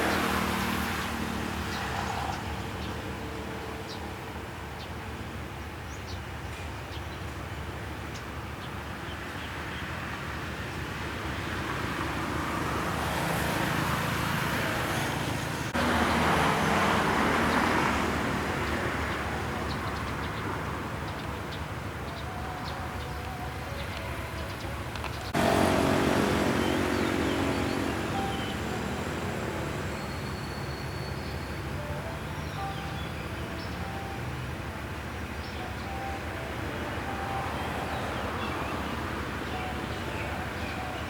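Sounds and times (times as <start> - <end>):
diesel locomotive engine rumbling: 14.0 - 41.0.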